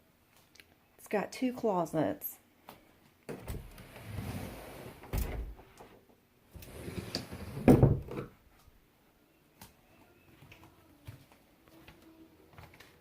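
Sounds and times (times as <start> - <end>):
closet doors opening and shutting: 3.3 - 8.4.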